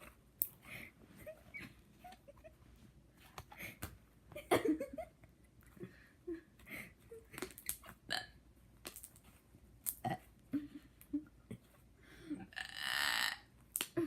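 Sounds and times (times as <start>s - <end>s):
person burping: 12.4s - 13.5s.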